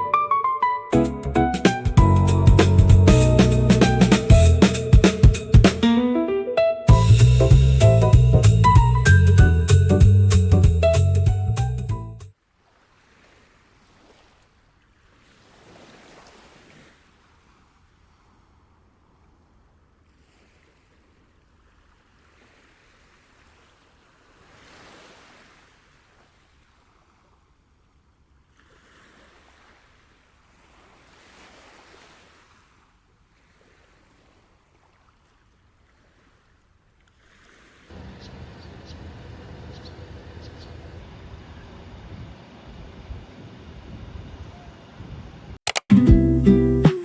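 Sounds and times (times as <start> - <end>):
low rumble: 6.9 - 10.9
sea waves washing onto beach: 37.2 - 45.6.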